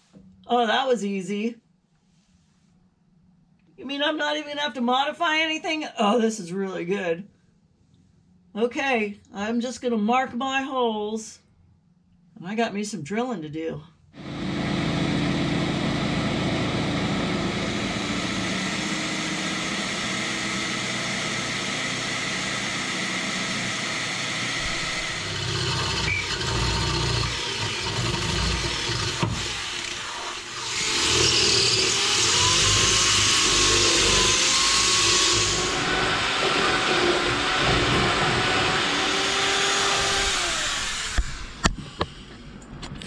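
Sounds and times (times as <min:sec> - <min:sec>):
power drill boring metal: 0:14.2 - 0:42.2.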